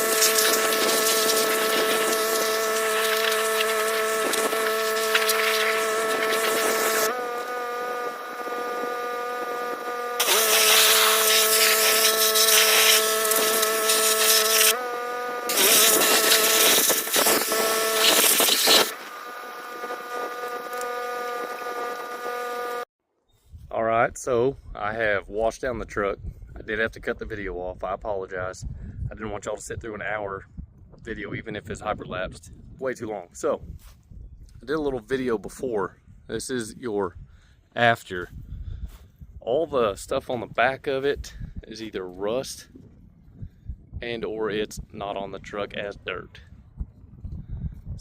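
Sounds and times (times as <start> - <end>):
loud hissing water spray: 0.0 - 7.1, 10.2 - 14.8, 15.5 - 19.1
pressure washer motor drone: 0.0 - 22.9.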